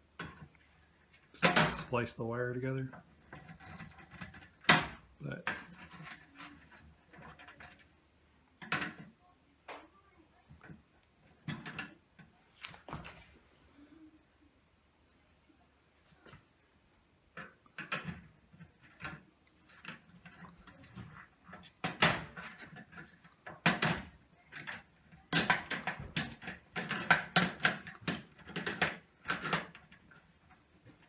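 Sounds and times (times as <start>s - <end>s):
tools clicking and rattling: 17.4s - 31.0s.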